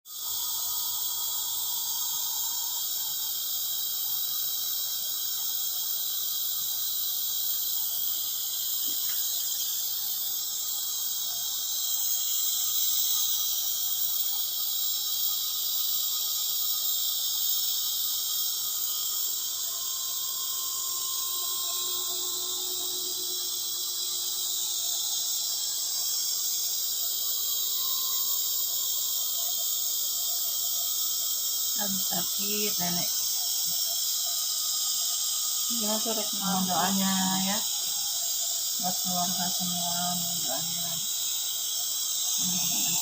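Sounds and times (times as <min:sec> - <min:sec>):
crickets and insects chirping: 0:00.1 - 0:43.0.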